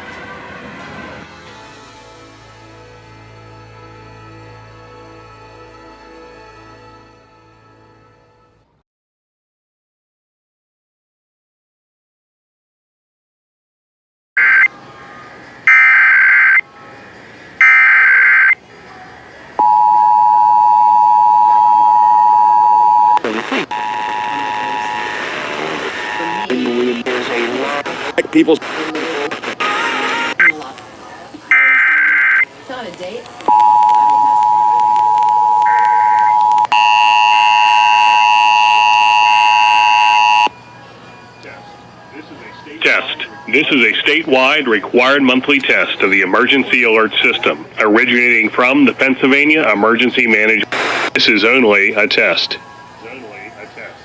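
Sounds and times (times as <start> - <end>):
two-tone attention signal: 14.4 - 14.8, 15.7 - 16.6, 17.6 - 18.6, 19.6 - 27.4, 31.5 - 32.5, 33.5 - 40.7
warbling data tones: 33.5 - 40.6.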